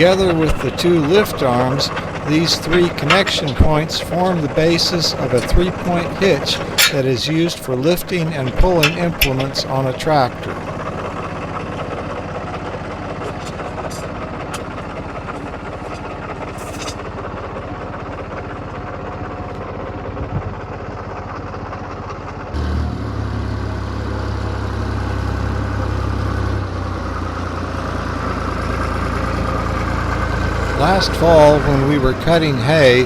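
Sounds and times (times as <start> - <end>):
deep loud engine note: 0.0 - 11.6, 22.6 - 33.0
diesel tractor engine idling: 0.0 - 33.0
light metallic clinks: 1.1 - 11.2.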